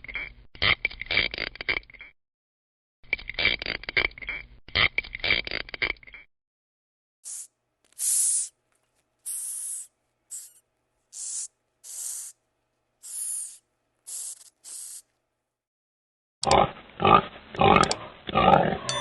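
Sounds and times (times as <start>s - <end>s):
short sharp hisses: 7.2s - 8.5s, 9.2s - 12.4s, 13.0s - 15.1s.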